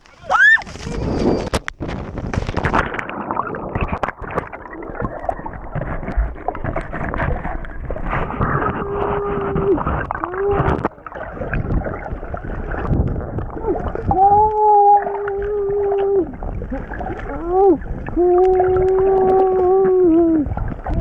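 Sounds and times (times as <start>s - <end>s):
muffled underwater churning water: 0.0s - 21.0s
muffled moan: 8.4s - 10.9s, 13.5s - 21.0s.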